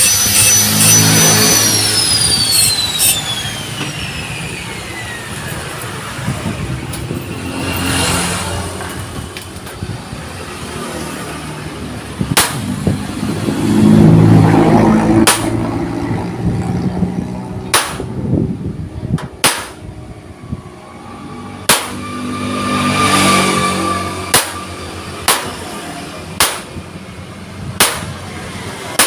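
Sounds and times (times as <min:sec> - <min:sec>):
engine drone: 0:00.0 - 0:29.0
sharp knocks on metal: 0:12.3 - 0:12.7, 0:15.2 - 0:15.6, 0:17.7 - 0:18.1, 0:19.2 - 0:19.8, 0:21.6 - 0:22.0, 0:25.2 - 0:25.6, 0:26.4 - 0:26.8, 0:27.8 - 0:28.2.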